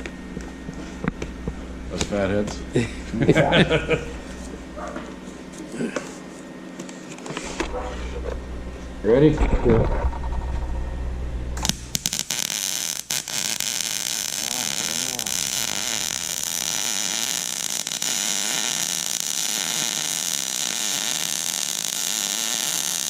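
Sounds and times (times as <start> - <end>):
welding arc crackling hiss: 11.6 - 23.0.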